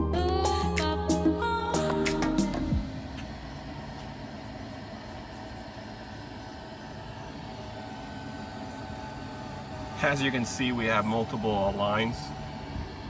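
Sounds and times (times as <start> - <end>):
background music: 0.0 - 3.1
machine hum with thin whine: 0.0 - 13.0.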